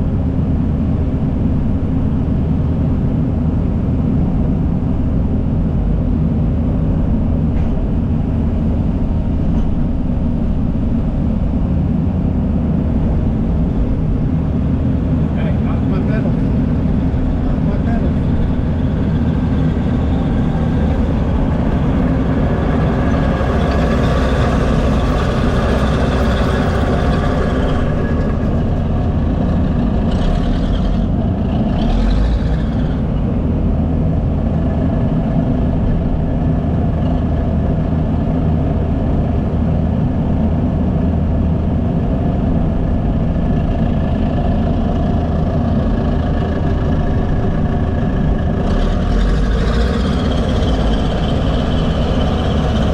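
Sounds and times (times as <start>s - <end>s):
heavy machinery diesel engines: 0.0s - 52.9s
rushing noise: 6.0s - 37.0s, 42.2s - 52.9s.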